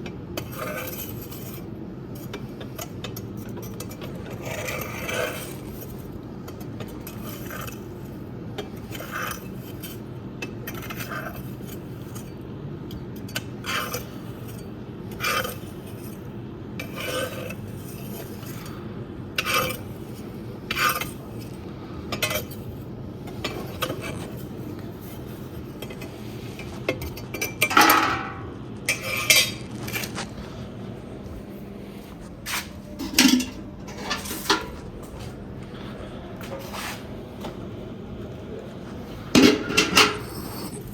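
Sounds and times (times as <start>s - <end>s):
steady low hum: 0.0s - 40.9s
metal shovel scraping in fireplace: 3.6s - 6.1s, 16.8s - 18.8s, 19.4s - 22.7s, 23.3s - 37.2s, 39.2s - 40.9s.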